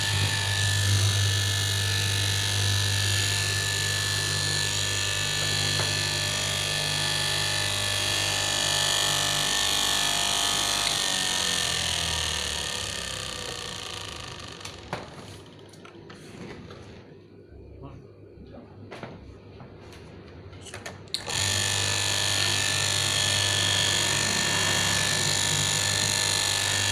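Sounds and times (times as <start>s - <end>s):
cloth-cutting machine motor whine: 0.0s - 15.6s, 21.2s - 26.9s.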